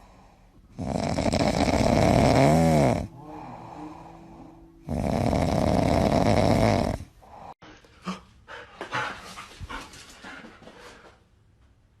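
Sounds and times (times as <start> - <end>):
dog panting: 7.9 - 11.1.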